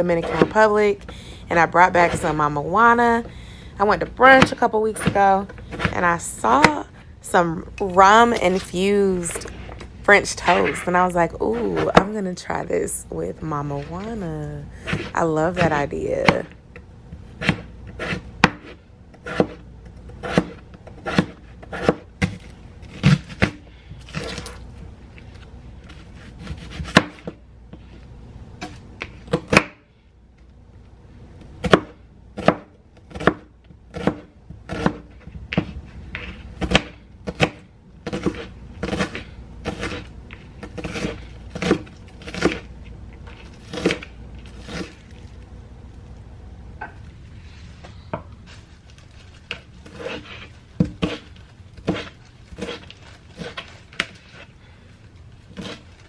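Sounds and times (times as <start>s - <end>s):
knife chopping on cutting board: 14.8s - 16.5s, 17.4s - 22.4s, 26.4s - 27.4s, 31.6s - 42.7s, 49.9s - 52.8s.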